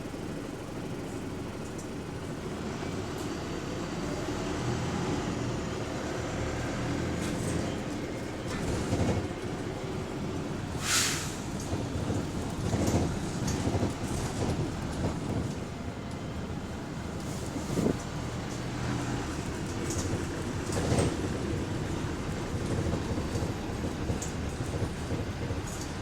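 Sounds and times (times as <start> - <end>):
bus engine and road noise: 0.0 - 26.0
compressed air hiss: 10.8 - 11.4.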